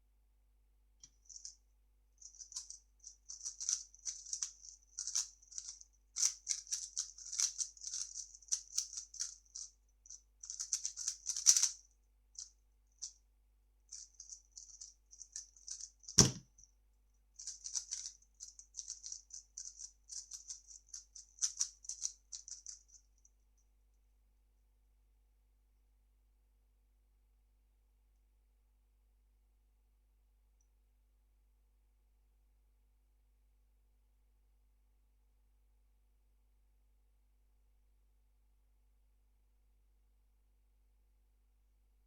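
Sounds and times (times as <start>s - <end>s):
puzzle cube plastic clicks: 2.6s - 9.7s, 10.4s - 11.8s
sharp thump: 16.2s - 16.4s.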